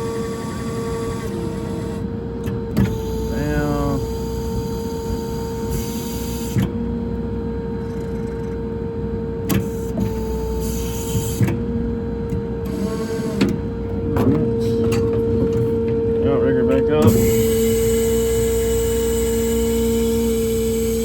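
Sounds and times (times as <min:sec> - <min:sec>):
hydraulic system whine: 0:00.0 - 0:21.0.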